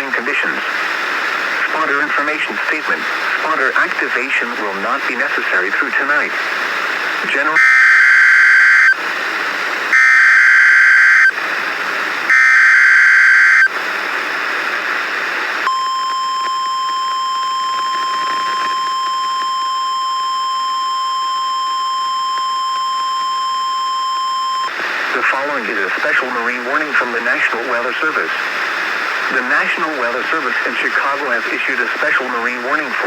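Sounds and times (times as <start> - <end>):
radio hiss: 0.0 - 15.7, 16.9 - 20.9, 21.5 - 33.0
steady warning alarm tone: 7.6 - 9.0, 9.9 - 11.3, 12.3 - 13.7.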